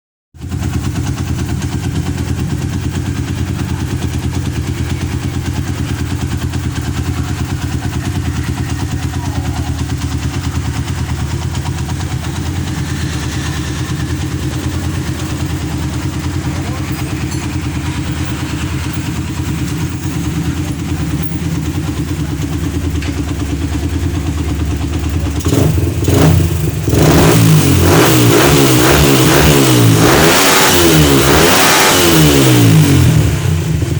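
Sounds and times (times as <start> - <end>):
motorcycle engine idling: 0.4 - 33.9
engine revving in blips: 4.5 - 33.9.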